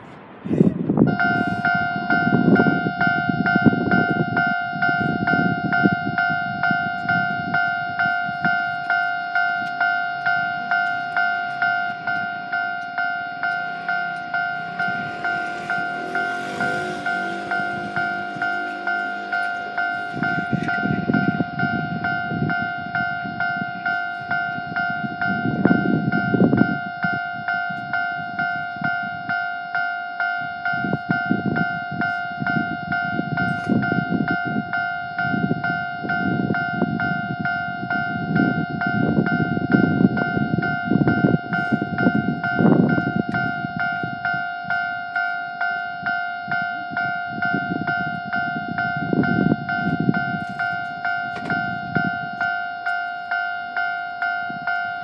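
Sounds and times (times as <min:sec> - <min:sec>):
level crossing bell ringing: 0:01.1 - 0:55.0
low rumble: 0:10.2 - 0:23.0.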